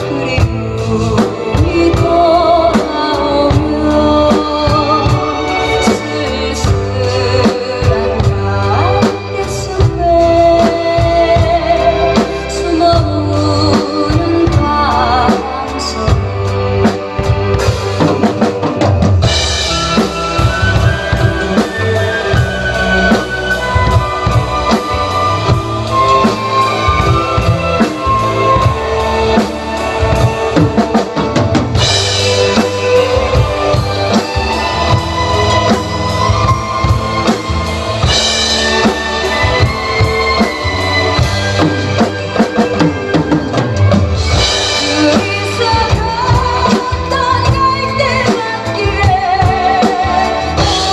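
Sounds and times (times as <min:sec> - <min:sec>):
backing track music: 0:00.0 - 0:50.9
drum kit playing: 0:00.0 - 0:50.9.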